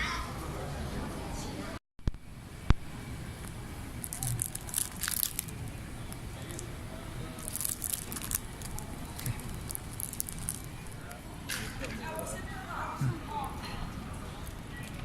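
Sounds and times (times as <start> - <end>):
crinkling and rustling: 4.0 - 5.7, 7.4 - 11.0.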